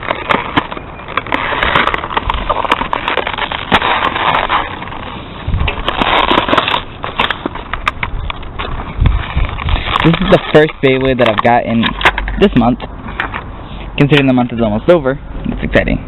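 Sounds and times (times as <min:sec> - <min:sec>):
packaging tearing and crackling: 0:00.0 - 0:12.3.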